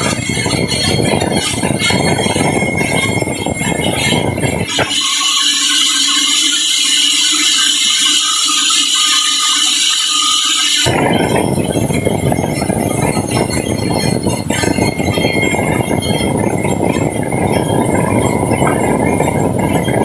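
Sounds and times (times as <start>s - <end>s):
sawmill saw cutting log: 4.7s - 10.9s.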